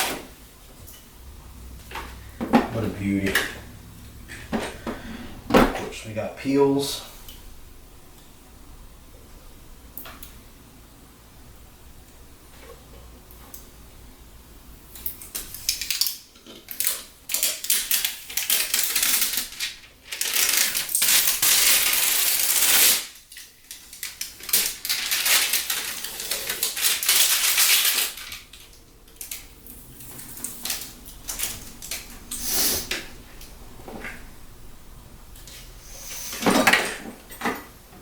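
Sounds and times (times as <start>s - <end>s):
plastic film peeling and crackling: 15.0s - 33.0s.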